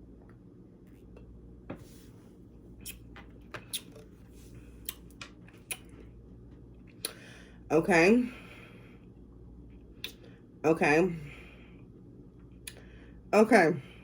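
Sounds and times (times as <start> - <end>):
steady low hum: 0.0 - 14.0
lip clicks: 2.8 - 3.0, 3.6 - 4.1, 4.8 - 6.0, 6.9 - 7.2, 10.0 - 10.3, 12.6 - 12.9.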